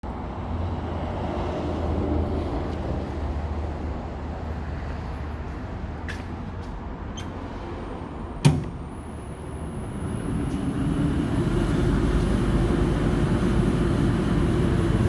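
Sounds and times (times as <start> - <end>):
dust collector motor humming: 9.8 - 15.0.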